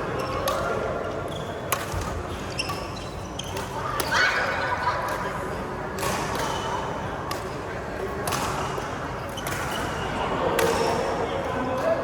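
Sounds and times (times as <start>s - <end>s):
racket hitting shuttlecock: 1.7s - 4.2s, 5.9s - 11.0s.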